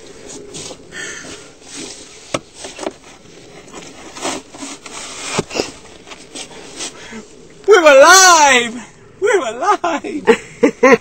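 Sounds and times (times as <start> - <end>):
snow shovel scraping snow: 0.1 - 7.2.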